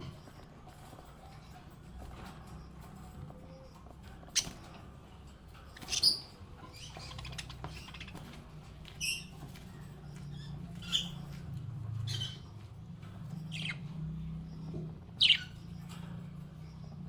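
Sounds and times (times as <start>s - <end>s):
parrots chirping: 4.3s - 4.8s, 5.6s - 11.4s, 12.0s - 12.6s, 13.3s - 13.9s, 14.5s - 16.0s.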